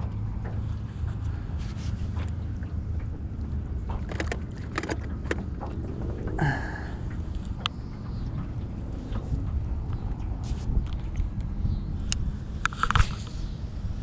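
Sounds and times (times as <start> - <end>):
small boat motor humming: 0.0 - 14.0
light clicks and knocks: 2.1 - 5.8.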